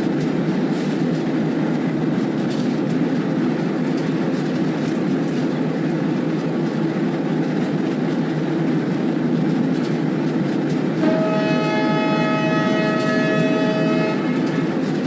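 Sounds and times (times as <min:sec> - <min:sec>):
diesel locomotive engine running: 0:00.0 - 0:15.0
locomotive horn blast: 0:11.0 - 0:15.0.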